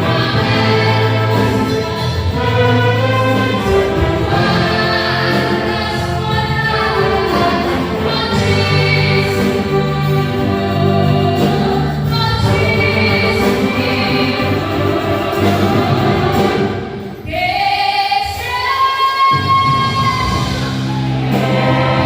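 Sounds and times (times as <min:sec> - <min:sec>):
band accompaniment with low notes: 0:00.0 - 0:17.2, 0:19.3 - 0:22.0
voices singing together: 0:00.0 - 0:22.0.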